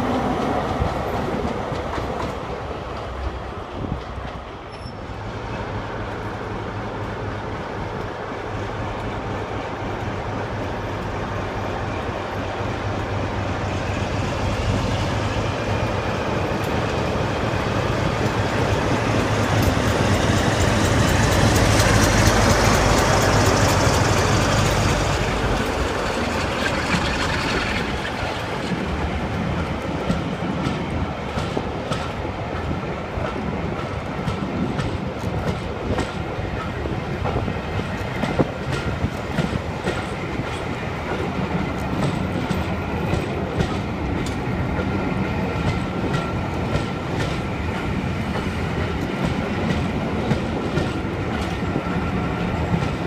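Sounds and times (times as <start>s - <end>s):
train engine drone: 0.0s - 53.0s
wheel and rail noise: 0.0s - 53.0s.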